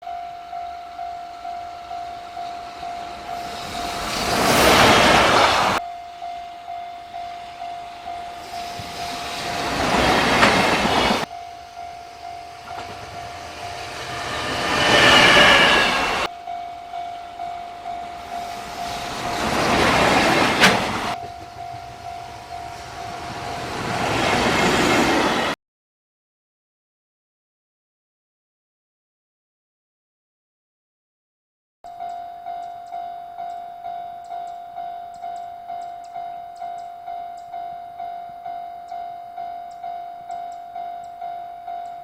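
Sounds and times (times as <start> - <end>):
level crossing bell clanging: 0.0 - 4.1, 5.8 - 25.2
freight train passing: 0.1 - 25.6.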